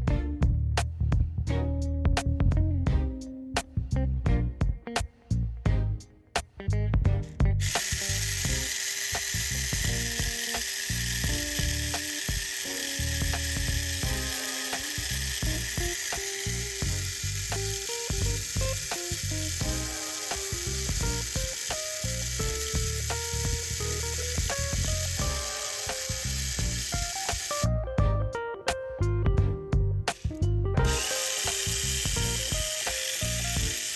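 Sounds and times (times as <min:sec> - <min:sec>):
background music: 0:00.0 - 0:33.9
toy car motor whirring: 0:07.6 - 0:27.7, 0:30.8 - 0:33.9.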